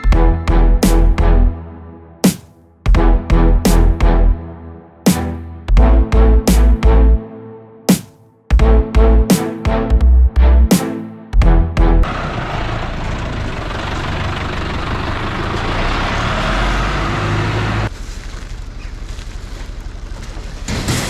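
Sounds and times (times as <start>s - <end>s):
vehicle engine rumbling: 11.4s - 21.0s.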